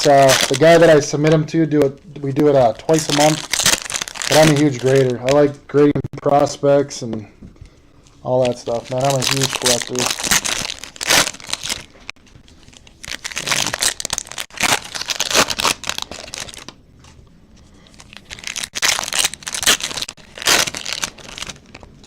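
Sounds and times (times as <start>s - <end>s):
foil wrappers crinkling and tearing: 0.0s - 1.0s, 2.6s - 5.5s, 8.4s - 16.7s, 17.8s - 22.0s.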